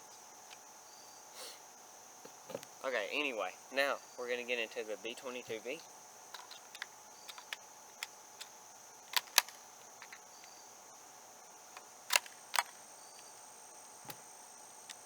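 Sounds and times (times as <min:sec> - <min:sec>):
crickets buzzing: 0:00.0 - 0:15.0
rifle mechanical clicks: 0:06.3 - 0:10.5, 0:11.7 - 0:13.3.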